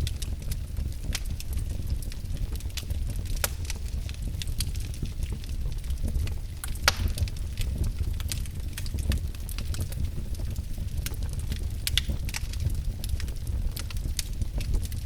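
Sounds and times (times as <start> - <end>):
fireplace fire crackling: 0.0 - 15.0
low fire rumble: 0.0 - 15.0.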